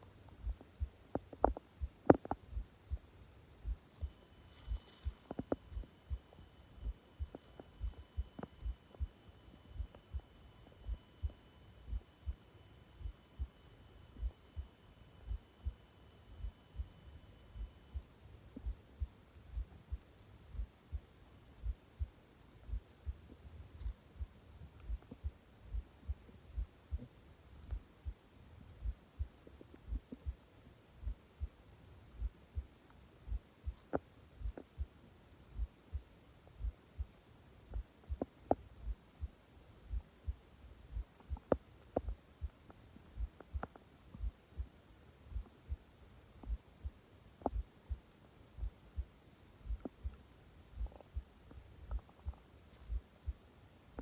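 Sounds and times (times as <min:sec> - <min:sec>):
low thumping pulse: 0:00.3 - 0:50.2, 0:50.8 - 0:53.4
stomach gurgles: 0:00.5 - 0:02.5.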